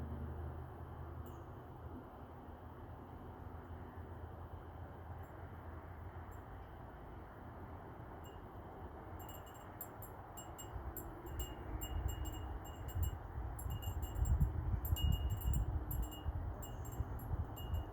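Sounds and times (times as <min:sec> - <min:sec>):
wind chimes tinkling: 0:09.2 - 0:17.9
wind rumble on microphone: 0:10.6 - 0:17.9.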